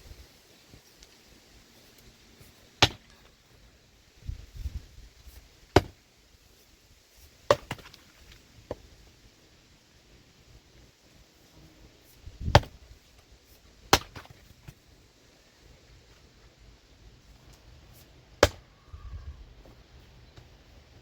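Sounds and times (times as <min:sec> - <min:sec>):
axe chopping firewood: 0:02.8 - 0:03.2, 0:05.7 - 0:06.0, 0:07.4 - 0:08.8, 0:12.4 - 0:12.9, 0:13.8 - 0:14.8, 0:18.4 - 0:18.7.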